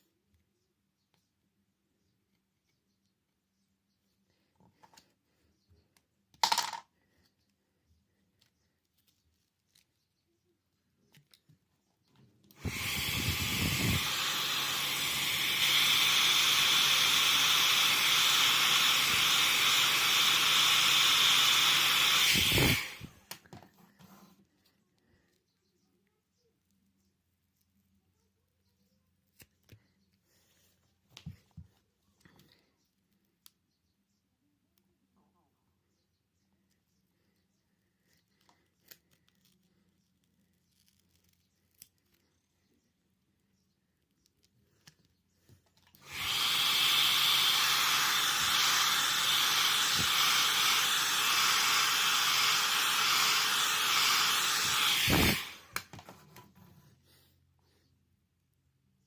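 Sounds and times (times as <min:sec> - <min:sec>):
heat gun blowing hot air: 0:12.5 - 0:23.5, 0:45.9 - 0:55.9.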